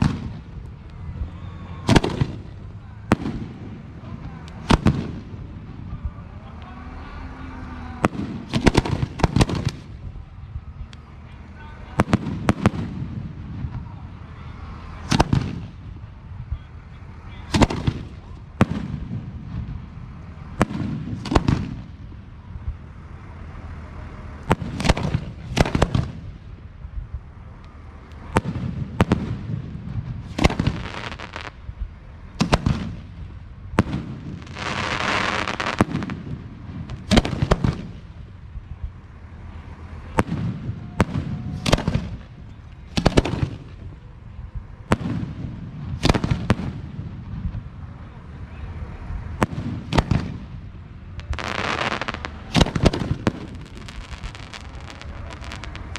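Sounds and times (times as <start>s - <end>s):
fireworks bursting: 0.0s - 55.9s
hissing crackling firework burst: 28.2s - 31.6s, 32.3s - 44.0s, 49.4s - 55.9s.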